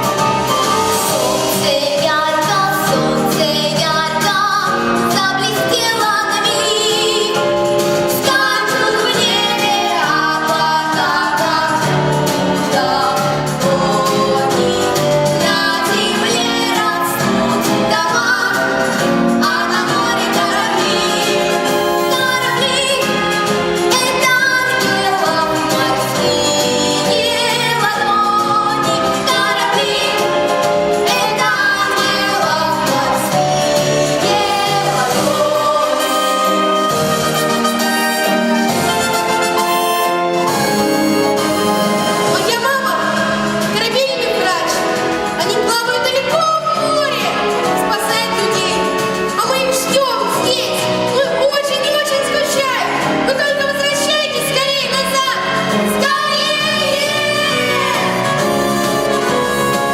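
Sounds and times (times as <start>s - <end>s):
choir-like backing voices: 0.0s - 45.4s
instrumental accompaniment: 0.0s - 59.9s
woman singing: 0.9s - 39.0s, 42.0s - 59.9s.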